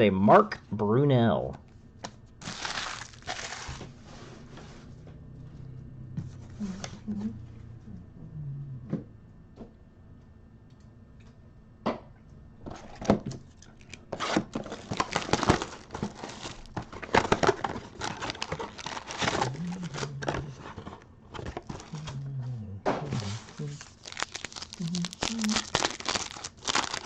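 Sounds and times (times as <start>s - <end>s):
foil pack crinkling and tearing: 2.4s - 3.9s, 13.8s - 22.1s, 23.1s - 27.0s.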